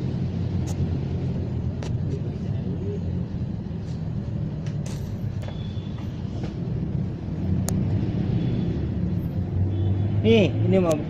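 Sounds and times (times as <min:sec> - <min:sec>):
steady low rumble: 0:00.0 - 0:08.2.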